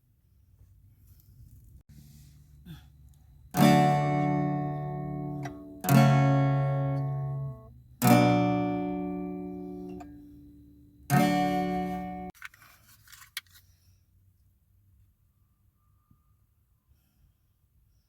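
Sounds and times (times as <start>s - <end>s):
acoustic guitar chords ringing: 3.5s - 12.3s.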